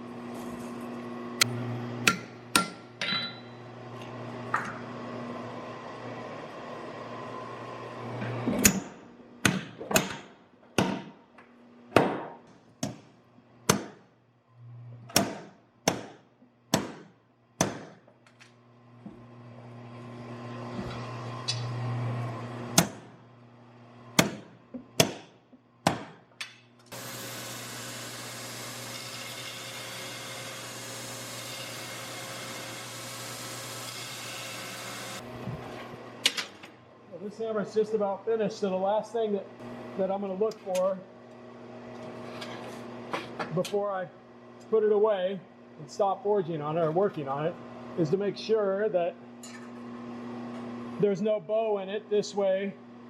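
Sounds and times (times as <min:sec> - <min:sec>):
hammer striking steel on anvil: 0:02.0 - 0:03.6.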